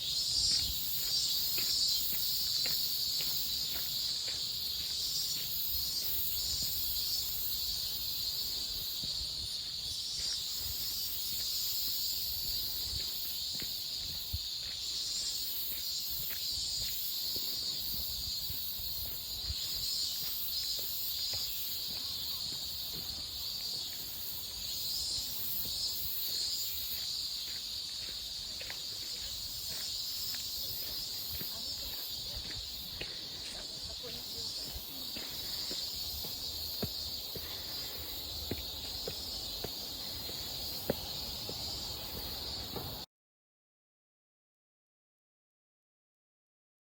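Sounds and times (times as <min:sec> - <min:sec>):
insects trilling: 0:00.0 - 0:43.0.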